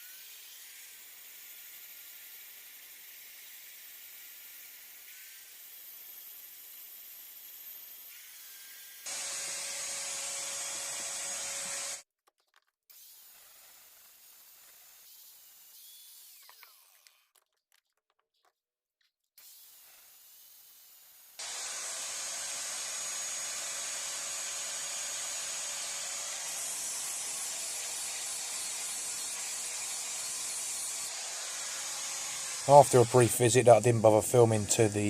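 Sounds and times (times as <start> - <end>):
electric grinder on steel: 0.0 - 12.0, 21.4 - 35.0.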